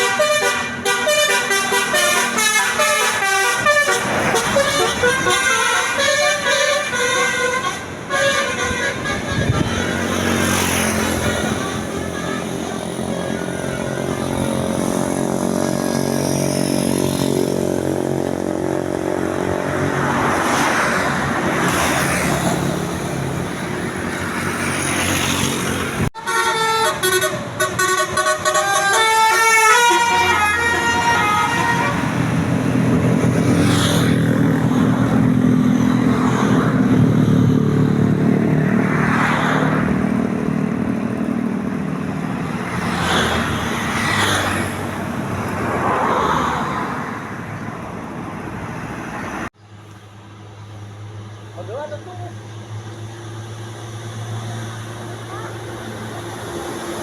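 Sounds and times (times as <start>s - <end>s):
multi-tone bus horn melody: 0.0s - 18.4s, 26.0s - 34.1s.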